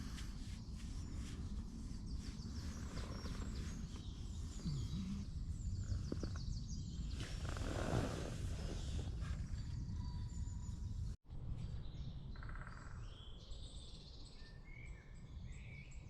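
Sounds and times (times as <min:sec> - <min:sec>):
birds singing: 0:00.0 - 0:11.2.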